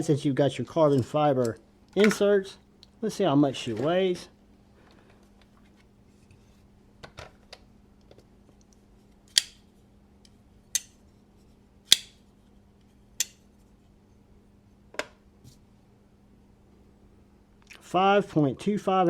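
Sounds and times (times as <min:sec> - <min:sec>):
folding knife metallic clicks: 0:09.3 - 0:09.6, 0:10.8 - 0:11.0, 0:11.9 - 0:12.2, 0:13.2 - 0:13.4.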